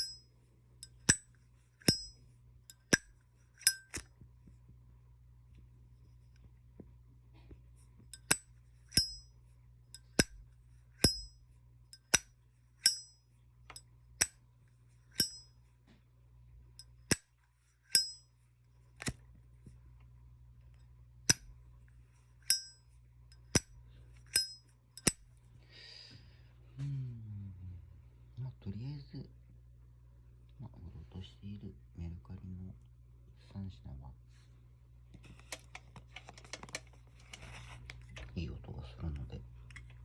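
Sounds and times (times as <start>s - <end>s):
lighter lids clicking open and shut: 2.7s - 4.1s, 8.2s - 9.2s.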